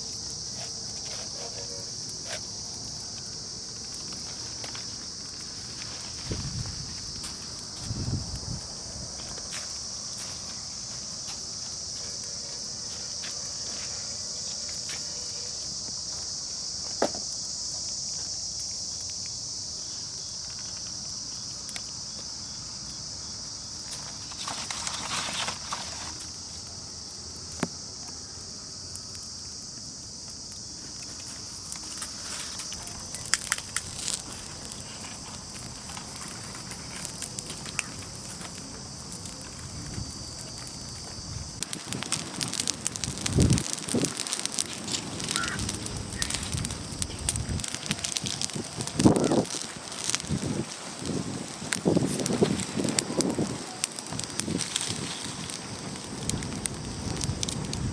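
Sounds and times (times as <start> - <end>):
high-pitched insect chorus: 0.0 - 57.9
rustling: 24.0 - 26.3.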